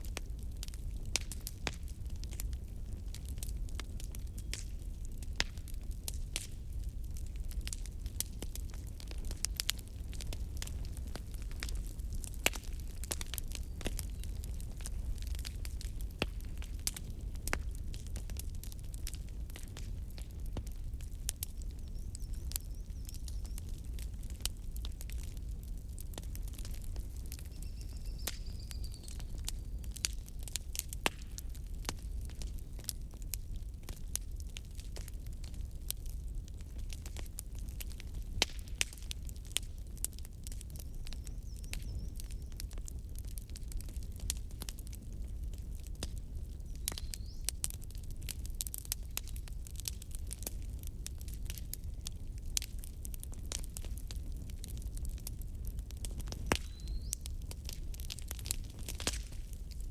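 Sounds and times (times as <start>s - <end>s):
low rumble of flames: 0.0s - 59.9s
wood fire crackling and popping: 0.0s - 59.9s.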